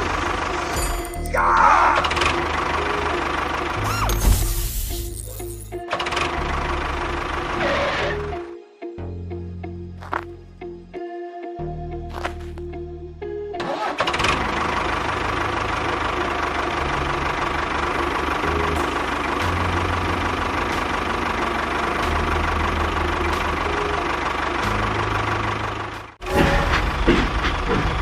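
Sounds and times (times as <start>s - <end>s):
engine idling with knocking: 0.0s - 0.8s, 2.0s - 4.0s, 6.0s - 7.7s, 14.2s - 28.0s.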